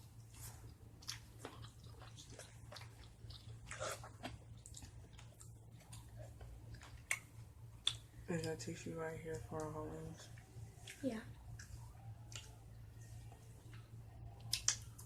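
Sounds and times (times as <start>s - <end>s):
chicken wings being chewed: 0.2s - 8.0s.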